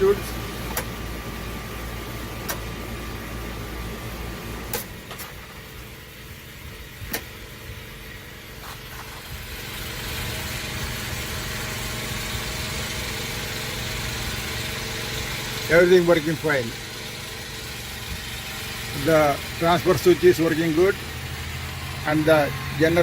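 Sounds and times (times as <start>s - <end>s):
generator engine running: 0.0s - 23.0s.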